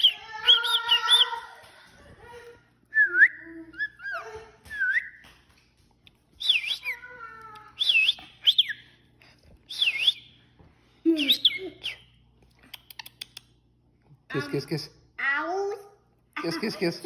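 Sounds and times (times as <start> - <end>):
cockatiel whistling: 6.4 - 7.0, 7.8 - 8.8, 9.7 - 10.3.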